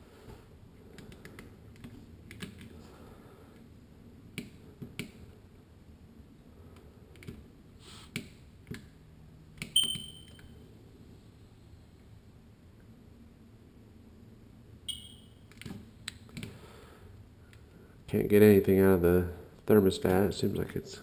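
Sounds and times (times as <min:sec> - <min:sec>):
short electronic beep: 0:09.8 - 0:10.5, 0:14.9 - 0:15.4.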